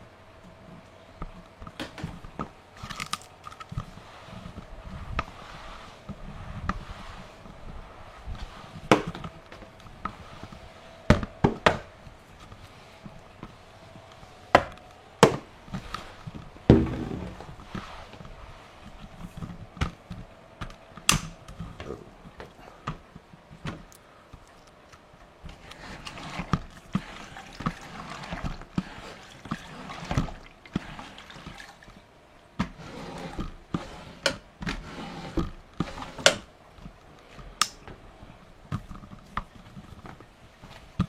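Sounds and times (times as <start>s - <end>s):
wet mop swishing on floor: 3.6s - 14.5s, 15.2s - 20.3s, 25.4s - 32.0s.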